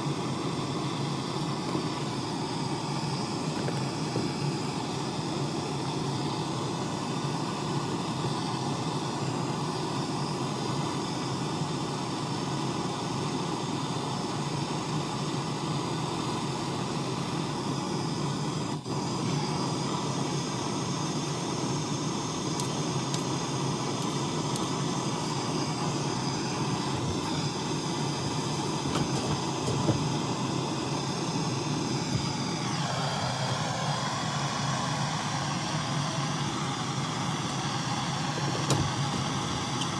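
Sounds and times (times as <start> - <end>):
mechanical running hum: 0.0 - 39.9.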